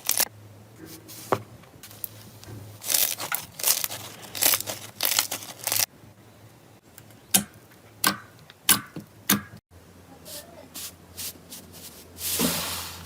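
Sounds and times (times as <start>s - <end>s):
slime crackling and crinkling: 2.8s - 5.9s.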